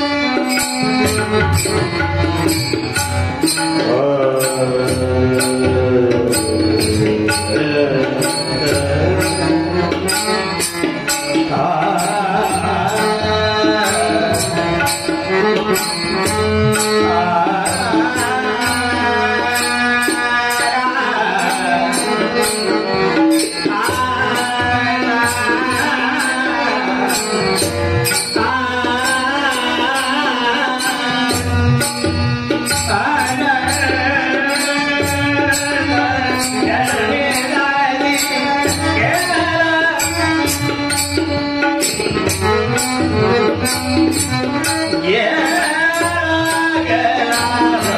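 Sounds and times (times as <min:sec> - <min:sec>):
man singing devotional song: 0:00.0 - 0:47.9
steady percussion rhythm: 0:00.0 - 0:47.9.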